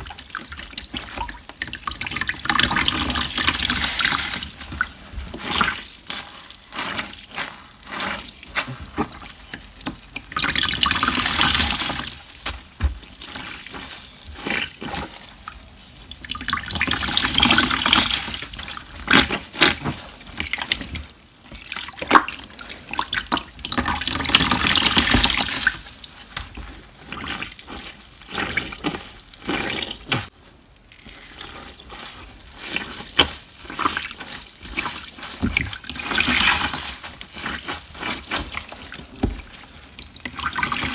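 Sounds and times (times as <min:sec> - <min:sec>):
water gushing from squeezed sponge: 0:00.0 - 0:40.9
wet crackling: 0:00.1 - 0:40.9.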